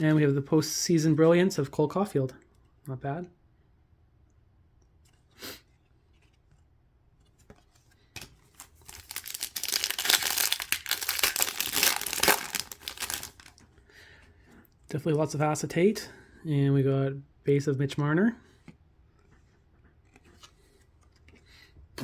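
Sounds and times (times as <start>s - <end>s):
card pack wrapper tearing and crinkling: 8.2s - 13.6s.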